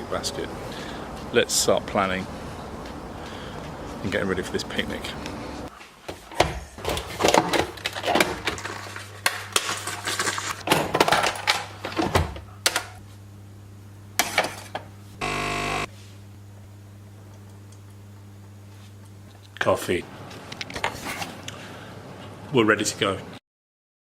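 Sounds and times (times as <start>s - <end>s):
steady low hum: 14.8s - 22.6s
loud buzzing tone: 15.2s - 15.9s.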